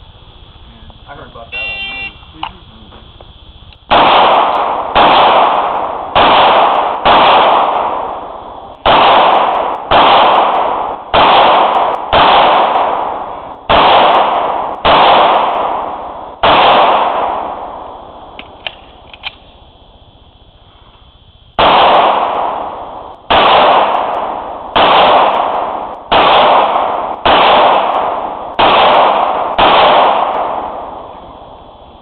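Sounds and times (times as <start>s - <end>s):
pistol shots echoing: 3.9s - 19.6s, 21.6s - 31.9s.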